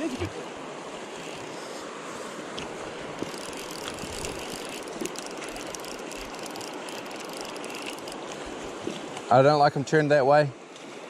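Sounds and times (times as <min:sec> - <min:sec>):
river water rushing: 0:00.0 - 0:11.0
fly reel drag ticking: 0:03.0 - 0:08.5.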